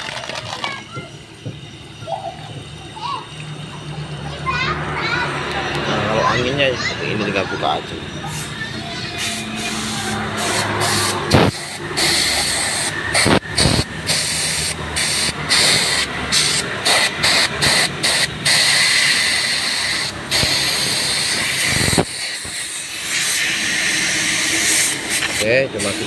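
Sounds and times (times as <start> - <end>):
compressed air hissing: 8.2 - 26.0.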